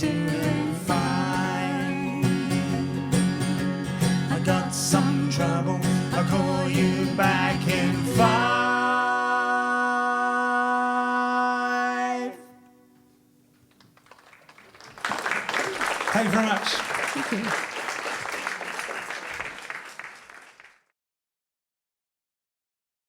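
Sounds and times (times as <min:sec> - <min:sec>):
country song with acoustic guitar: 0:00.0 - 0:13.0.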